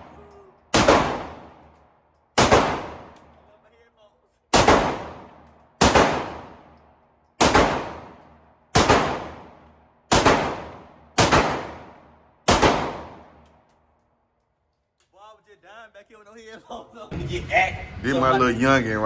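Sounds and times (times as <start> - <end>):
gunshots with echo: 0.0 - 1.7, 2.4 - 3.2, 4.5 - 6.7, 7.4 - 13.4.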